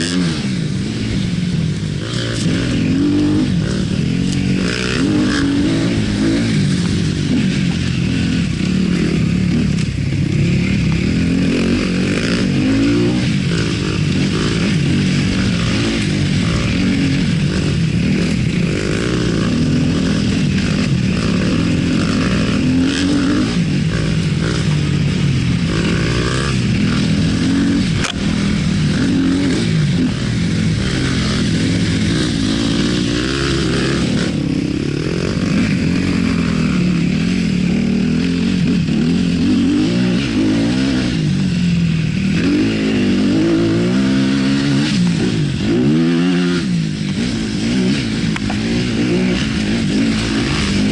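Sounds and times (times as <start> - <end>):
motorcycle engine revving: 0.0 - 50.9.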